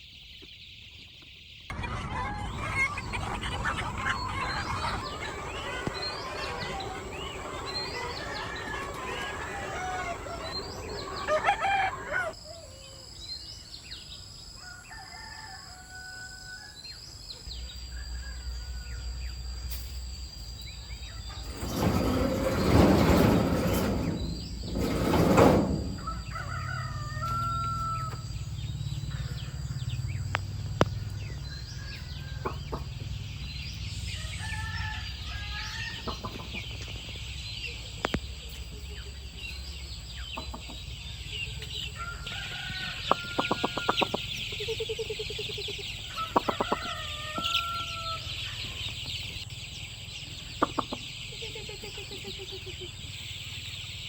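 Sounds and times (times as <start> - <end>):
hens clucking: 1.7 - 12.4
rooster crowing: 4.0 - 12.7, 14.6 - 16.8, 24.8 - 28.3.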